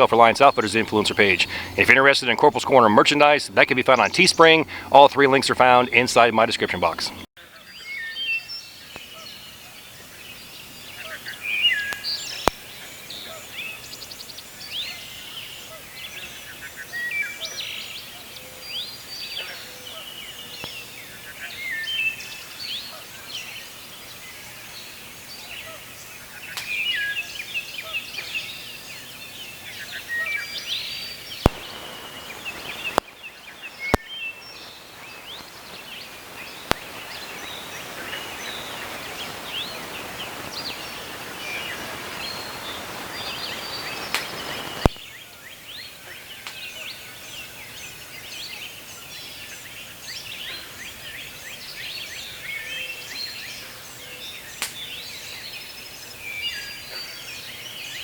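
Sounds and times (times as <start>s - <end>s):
steady background hiss: 0.0s - 58.0s
wild birds singing and calling: 0.0s - 58.0s
sharp clicks: 31.5s - 33.1s, 36.6s - 37.0s.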